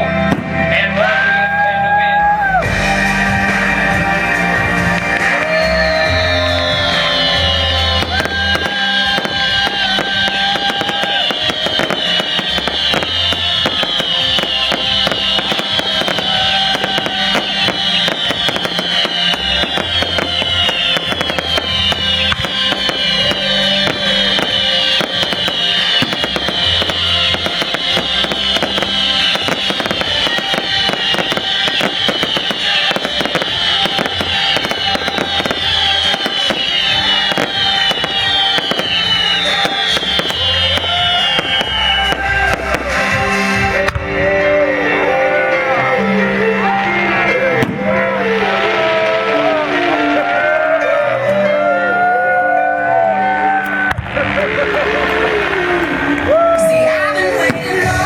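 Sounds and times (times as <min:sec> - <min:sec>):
music with pulsing bass: 0:00.0 - 0:58.0
fireworks crackling: 0:02.8 - 0:50.5, 0:53.5 - 0:58.0.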